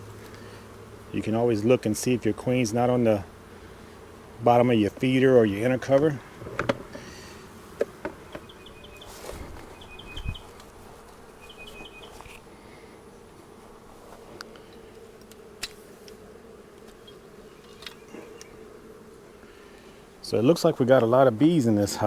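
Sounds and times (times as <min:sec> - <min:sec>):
honeybees buzzing: 0:00.0 - 0:22.0.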